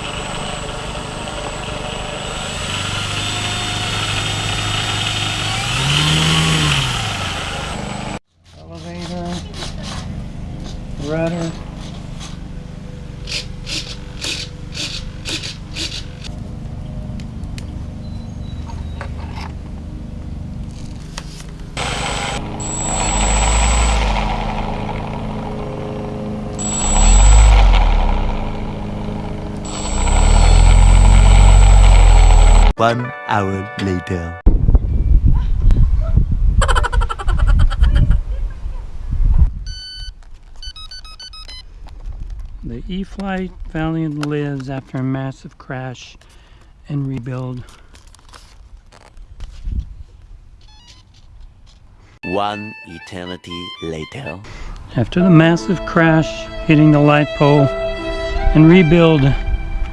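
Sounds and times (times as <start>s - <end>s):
electric motor and propeller running: 0.0s - 8.2s, 11.7s - 16.3s, 20.6s - 32.7s.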